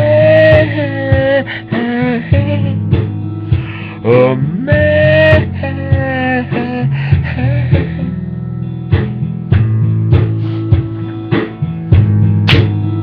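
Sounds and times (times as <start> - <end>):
bass: 0.0 - 13.0
guitar: 0.0 - 13.0
instrumental backing music: 0.0 - 13.0
steady beat: 8.9 - 13.0.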